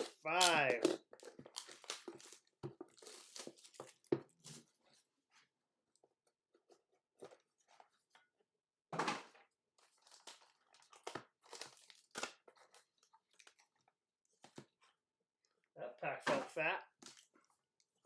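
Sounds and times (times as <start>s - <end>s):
plastic wrapping tearing and crinkling: 0.0s - 4.6s, 10.0s - 13.6s.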